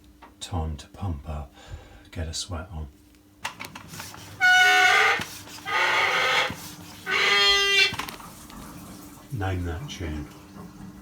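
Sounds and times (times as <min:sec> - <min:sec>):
hand pump squealing whistle: 0:04.3 - 0:08.0.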